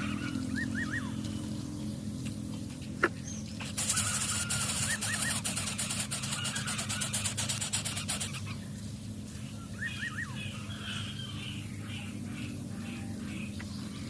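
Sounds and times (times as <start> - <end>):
bird chirps: 0.0 - 14.0
steady low hum: 0.0 - 14.0
high-pitched ticking buzz: 3.6 - 8.5.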